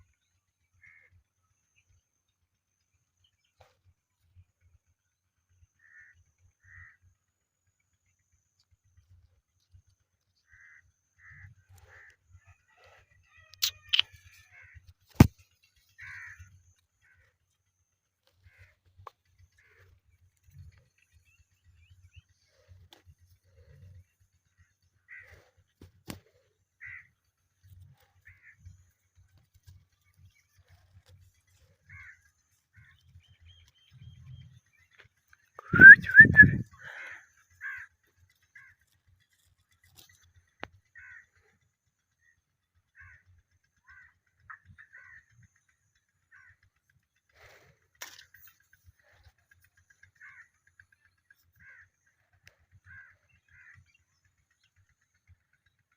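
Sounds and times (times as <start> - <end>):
parrot chirping: 35.6 - 36.6.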